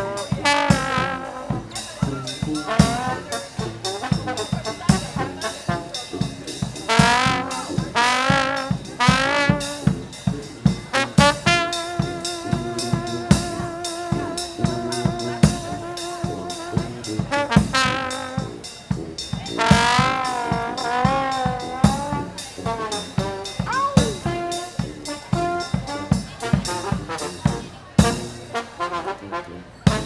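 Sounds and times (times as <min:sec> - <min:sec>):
drum kit: 0:00.0 - 0:28.9
brass band playing jazz: 0:00.0 - 0:30.0.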